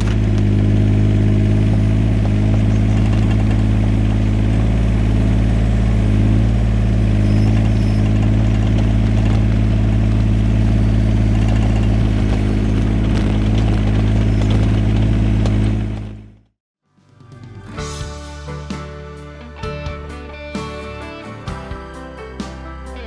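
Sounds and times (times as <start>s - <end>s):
diesel engine running: 0.0s - 16.5s.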